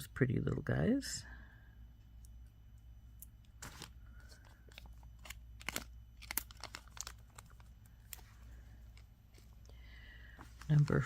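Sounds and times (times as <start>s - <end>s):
plastic packaging crinkling: 3.6s - 9.7s.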